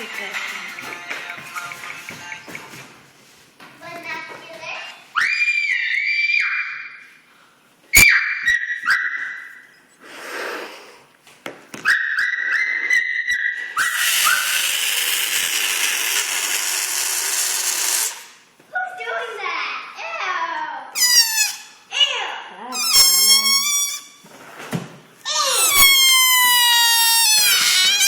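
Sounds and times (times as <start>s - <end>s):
balloon neck squealing: 12.0s - 18.4s, 21.0s - 21.9s, 22.7s - 24.2s, 25.2s - 28.0s.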